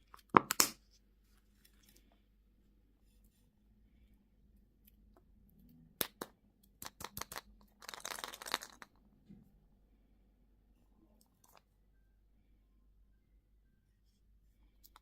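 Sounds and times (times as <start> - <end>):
plastic packaging crinkling: 7.2 - 8.9.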